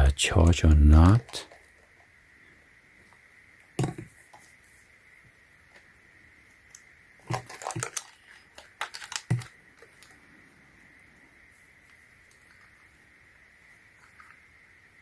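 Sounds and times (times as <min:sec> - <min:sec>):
clicks and rattles of small objects: 0:01.2 - 0:01.9, 0:06.7 - 0:10.2.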